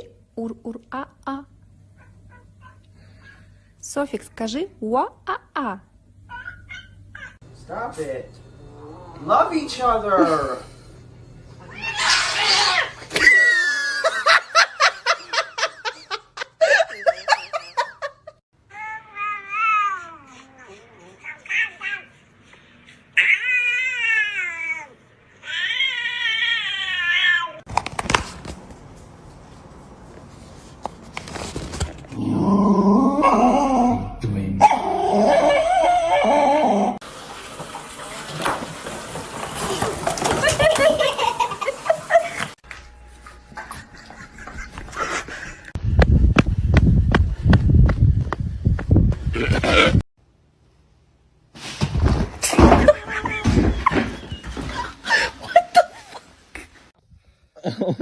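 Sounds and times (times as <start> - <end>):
dog wavering calls: 6.3 - 7.4
person laughing: 13.2 - 18.4, 40.3 - 42.6, 43.5 - 45.8, 54.6 - 56.7, 57.6 - 58.0.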